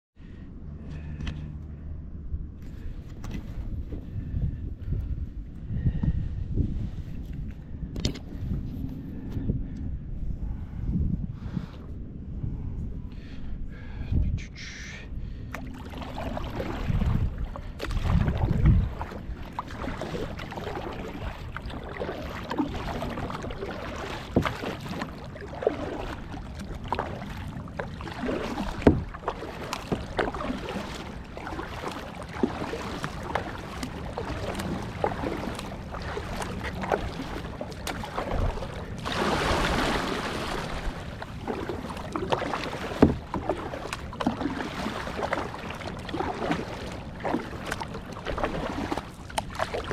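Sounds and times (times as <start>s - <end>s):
water against hull: 0.2s - 49.9s
paddle strokes and splashes: 2.6s - 5.9s, 15.4s - 49.9s
rush of water: 15.5s - 49.9s.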